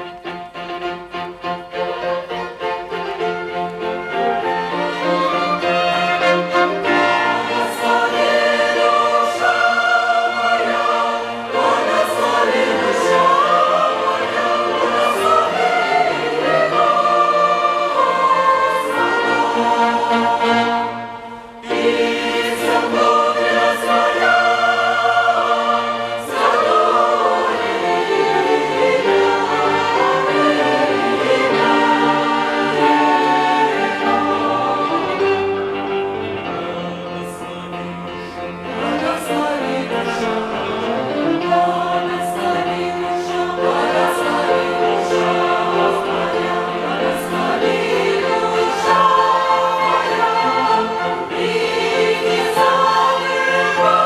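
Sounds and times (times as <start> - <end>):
choir singing a hymn: 0.0 - 54.0
string and wind orchestra: 0.0 - 54.0.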